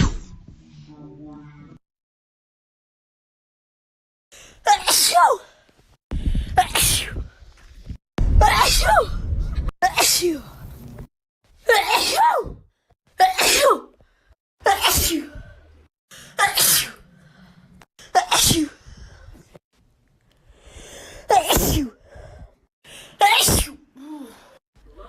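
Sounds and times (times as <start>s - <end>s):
woman sneezing: 11.7s - 12.4s, 13.2s - 13.9s, 14.7s - 15.3s, 16.4s - 17.0s, 18.2s - 18.8s, 21.3s - 22.0s, 23.2s - 23.8s
faint breaths: 17.0s - 17.9s, 20.3s - 21.3s.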